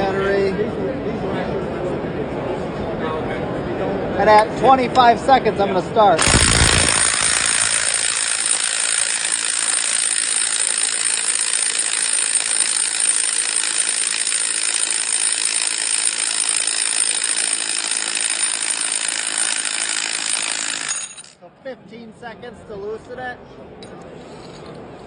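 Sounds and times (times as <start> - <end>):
impact wrench hammering: 6.2 - 21.4.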